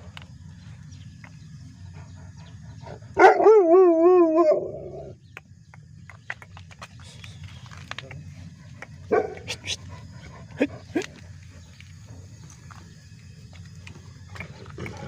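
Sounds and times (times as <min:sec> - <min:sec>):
puppy yelping howl: 0:03.2 - 0:05.1.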